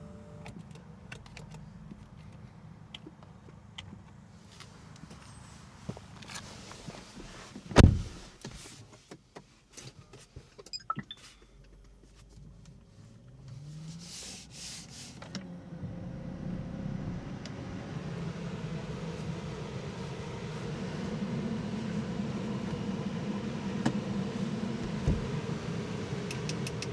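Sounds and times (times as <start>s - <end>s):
car door thud: 7.7s - 8.3s, 24.8s - 25.4s.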